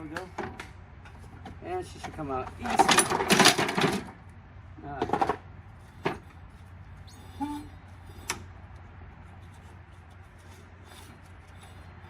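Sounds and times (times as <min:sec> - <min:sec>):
metal parts clicking and knocking: 0:02.0 - 0:04.2.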